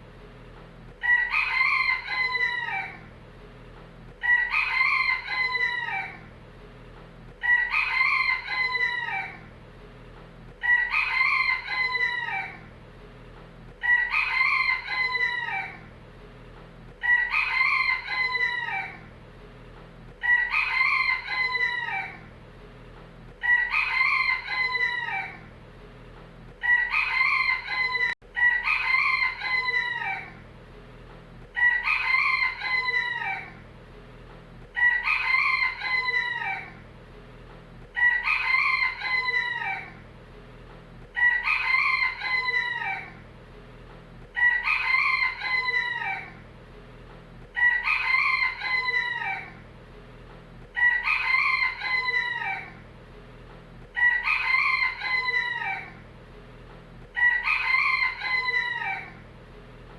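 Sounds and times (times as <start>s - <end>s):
rooster crowing: 1.0s - 3.1s, 4.2s - 6.3s, 7.4s - 9.5s, 10.6s - 12.7s, 13.8s - 15.9s, 17.0s - 19.1s, 20.2s - 22.3s, 23.4s - 25.5s, 26.6s - 30.4s, 31.6s - 33.6s, 34.8s - 36.8s, 38.0s - 40.0s, 41.2s - 43.2s, 44.3s - 46.4s, 47.6s - 49.6s, 50.8s - 52.8s, 53.9s - 56.0s, 57.1s - 59.2s.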